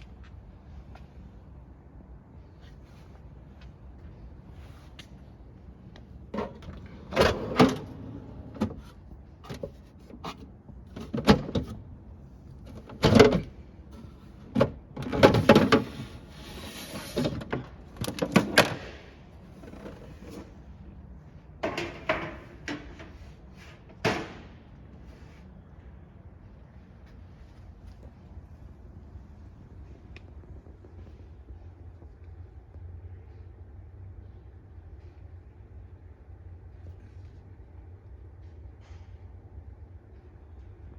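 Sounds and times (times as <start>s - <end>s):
drawer sliding scrape: 6.4s - 10.4s, 12.7s - 20.6s
fridge drawers knocking and clattering: 6.4s - 11.8s, 12.7s - 13.6s, 14.4s - 16.2s, 21.6s - 23.2s.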